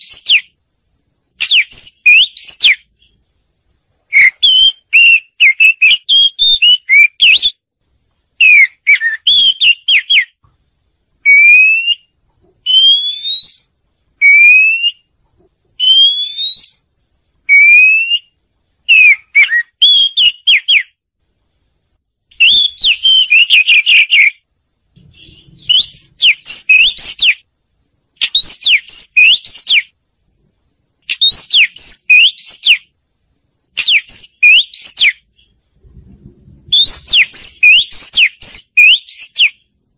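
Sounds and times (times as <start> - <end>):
bird singing whistled phrases: 0.0 - 0.6, 1.4 - 3.2, 4.1 - 7.6, 8.4 - 10.4, 11.2 - 15.1, 15.8 - 16.8, 17.5 - 21.0, 22.3 - 24.4, 25.0 - 27.4, 28.2 - 29.9, 31.1 - 32.9, 33.8 - 35.5, 36.7 - 39.7.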